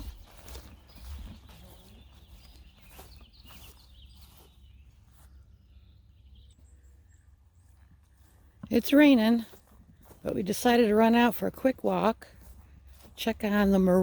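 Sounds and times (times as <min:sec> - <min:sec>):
faint bird chirps: 0:00.0 - 0:08.4.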